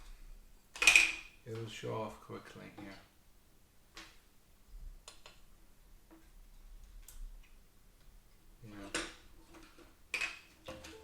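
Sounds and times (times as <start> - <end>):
person speaking: 1.4 - 3.1.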